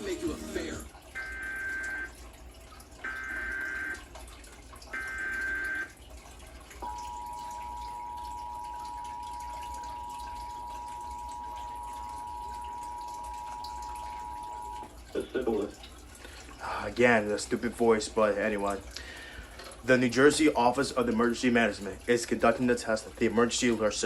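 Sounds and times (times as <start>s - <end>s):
two-tone attention signal: 1.2s - 2.1s, 3.1s - 4.0s, 5.0s - 5.9s, 6.8s - 14.9s.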